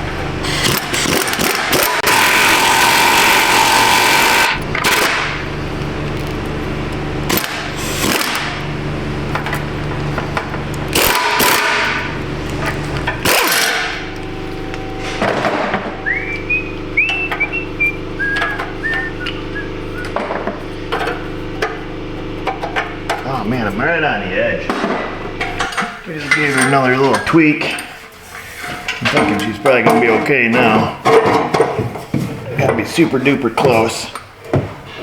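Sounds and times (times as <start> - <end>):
steady mechanical hum: 0.0 - 35.0
impact wrench bursts: 0.4 - 6.3, 7.1 - 21.8.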